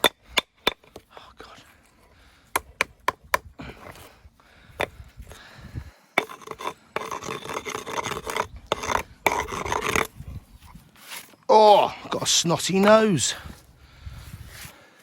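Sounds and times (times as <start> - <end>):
stones scraping together: 6.2 - 11.5.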